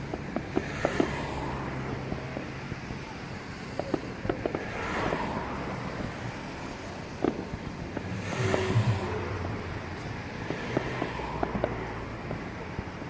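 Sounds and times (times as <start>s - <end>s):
distant fireworks popping: 0.0s - 13.0s
wind: 0.0s - 13.0s
crowd noise: 5.3s - 13.0s.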